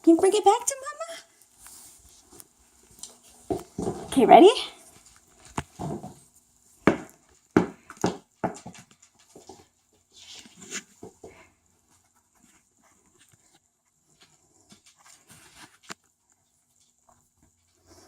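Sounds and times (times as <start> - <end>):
toy ball bouncing on floor: 6.8 - 9.5.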